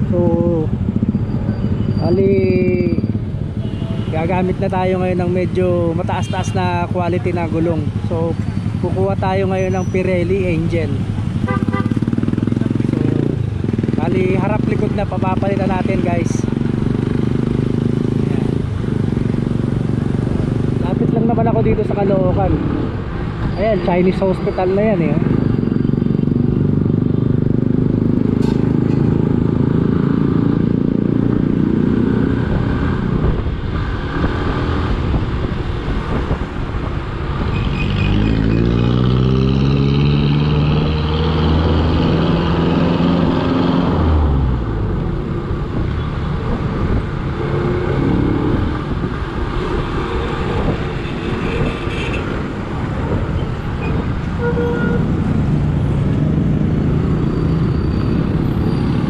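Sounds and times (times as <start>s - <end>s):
motorcycle engine: 10.8s - 21.6s, 25.2s - 35.0s
wind rumble: 31.6s - 37.6s.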